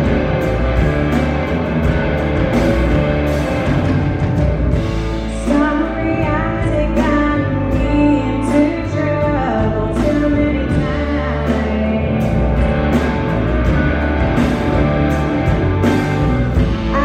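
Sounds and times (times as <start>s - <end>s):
live blues-rock band: 0.0s - 17.0s
woman singing: 5.3s - 12.8s.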